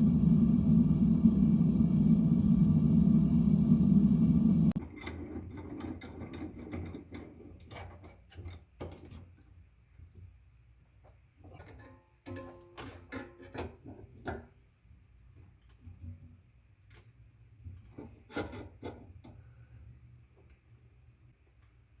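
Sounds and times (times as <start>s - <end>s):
steady low roar: 0.0s - 4.7s.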